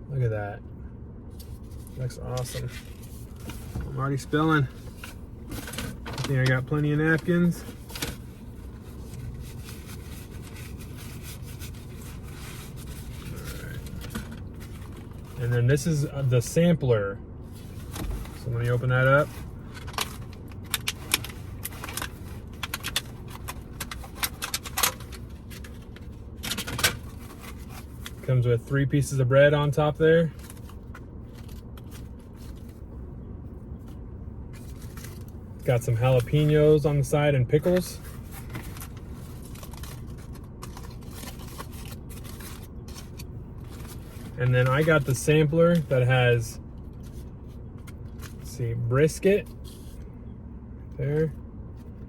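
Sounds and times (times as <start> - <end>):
food container crinkling: 38.3 - 44.4.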